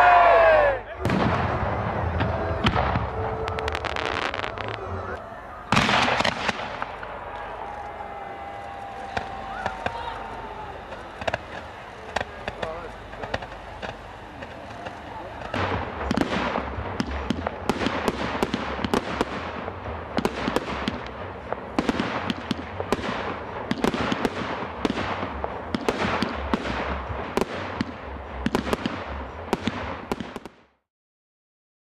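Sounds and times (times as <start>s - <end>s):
fireworks cracks and bangs: 0.2s - 30.8s
steady rushing hiss: 1.6s - 30.0s.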